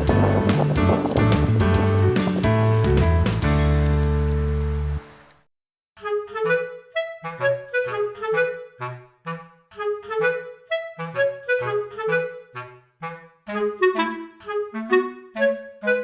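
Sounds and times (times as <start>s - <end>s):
bouncy tune with bass line: 0.0s - 5.0s
clarinet-like instrument: 6.0s - 16.0s.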